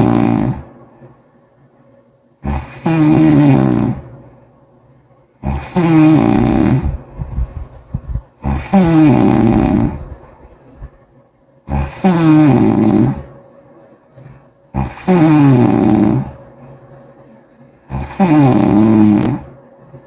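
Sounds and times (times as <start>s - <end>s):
person snoring wetly: 0.0s - 0.7s, 2.4s - 4.0s, 5.4s - 7.0s, 8.4s - 10.1s, 11.7s - 13.3s, 14.7s - 16.4s, 17.9s - 19.5s
crackling breaths: 5.4s - 20.0s.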